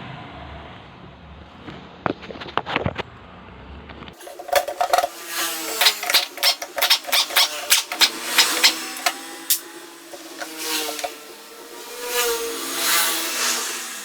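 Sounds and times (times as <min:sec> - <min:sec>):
metallic clicks of hand tools: 0:04.2 - 0:11.2.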